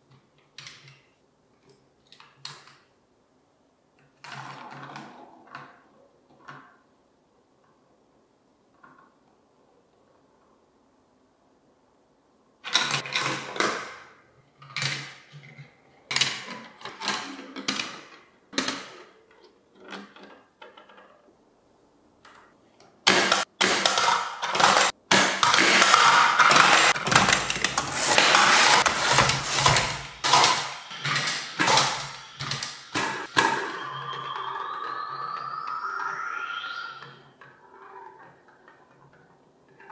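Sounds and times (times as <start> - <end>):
marbles clattering on plastic track: 23.2 - 33.2.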